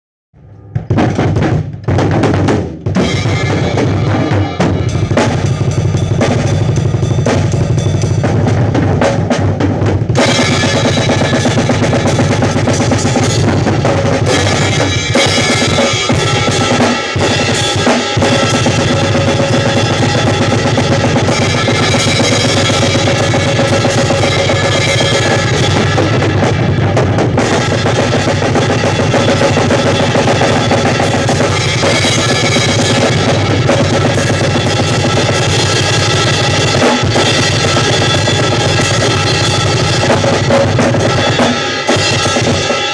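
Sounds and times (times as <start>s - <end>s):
drum kit playing: 0.4s - 42.9s.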